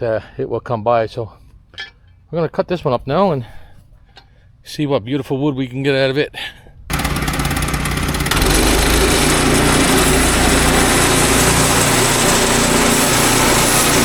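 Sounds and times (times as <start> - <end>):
bandsaw mill engine running: 6.9 - 14.0.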